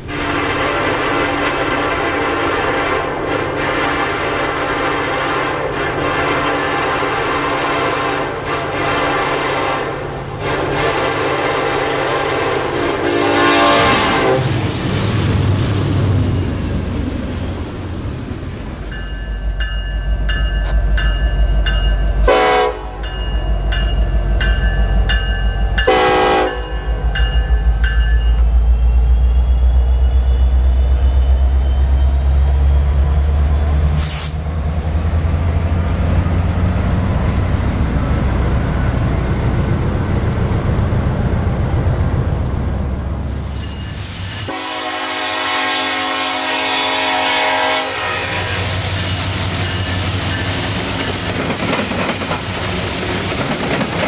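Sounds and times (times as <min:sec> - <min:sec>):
train horn blasts: 0:00.0 - 0:14.6, 0:22.2 - 0:23.3, 0:25.7 - 0:27.4, 0:44.4 - 0:49.0
freight train rumbling past: 0:00.0 - 0:54.0
crossing bell ringing: 0:18.8 - 0:29.0, 0:43.4 - 0:44.7, 0:48.4 - 0:53.6.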